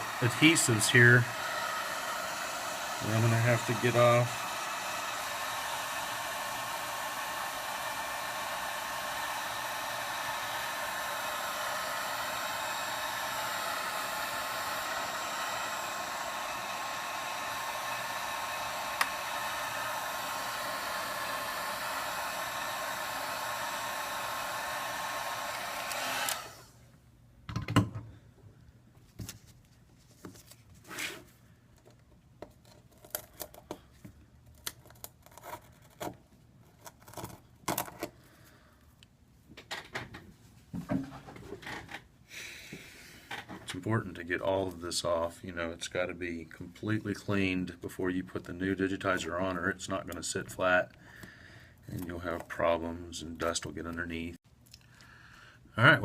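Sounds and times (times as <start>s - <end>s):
hot-air blower running: 0.0s - 26.8s.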